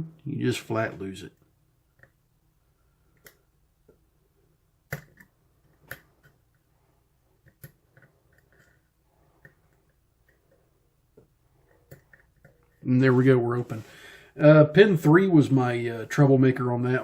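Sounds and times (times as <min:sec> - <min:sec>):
lock pick clicking and scraping: 0:11.2 - 0:12.8.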